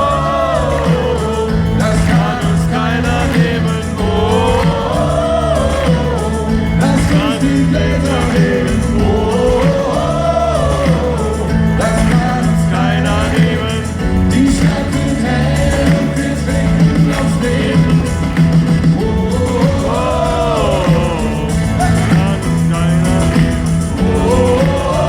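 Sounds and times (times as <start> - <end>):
live pop-rock band with vocals: 0.0 - 25.0.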